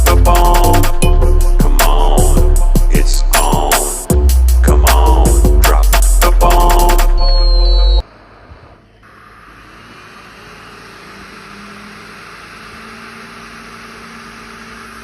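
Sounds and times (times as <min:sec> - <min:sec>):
hot air blower hissing: 0:09.0 - 0:15.0.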